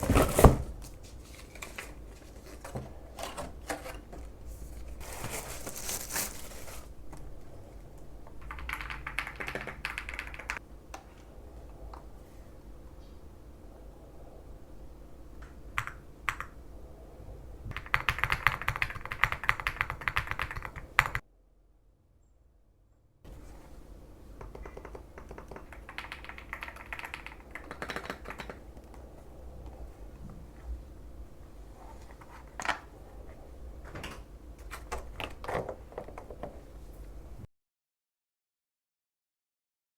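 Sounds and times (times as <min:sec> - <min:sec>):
mechanical keyboard typing: 0:08.4 - 0:10.6, 0:17.7 - 0:21.2, 0:24.4 - 0:28.9.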